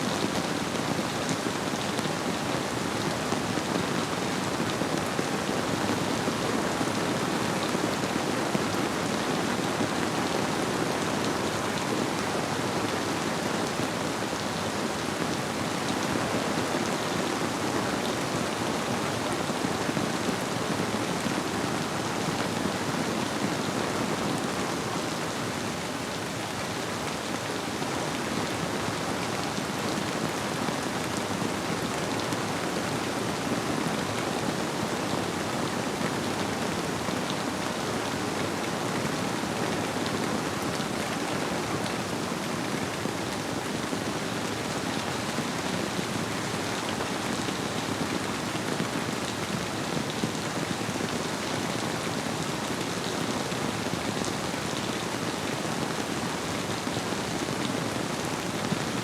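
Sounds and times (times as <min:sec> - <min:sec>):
steady rainfall: 0:00.0 - 0:59.0.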